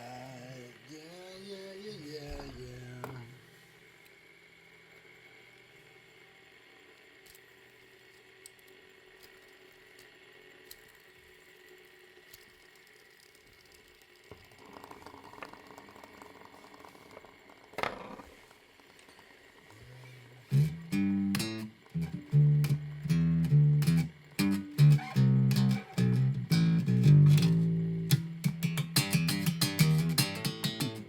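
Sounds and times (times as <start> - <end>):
faint room hum: 0.0 - 31.0
small clicks: 6.9 - 11.4
plucked guitar music: 20.5 - 31.0.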